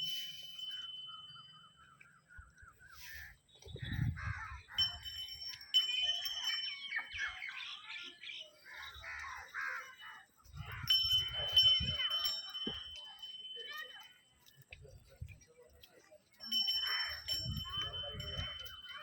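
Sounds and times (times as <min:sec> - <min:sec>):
high steady ringing tone: 0:00.0 - 0:02.4, 0:04.7 - 0:08.0, 0:09.7 - 0:14.4, 0:16.4 - 0:19.0
crows cawing: 0:08.7 - 0:10.2.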